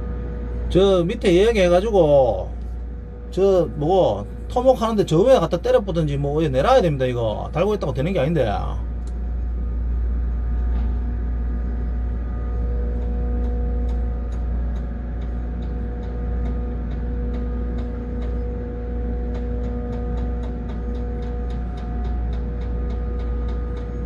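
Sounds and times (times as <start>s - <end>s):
electric hum: 0.0s - 24.0s
heavy low rumble: 0.0s - 24.0s
light ticking: 19.3s - 24.0s.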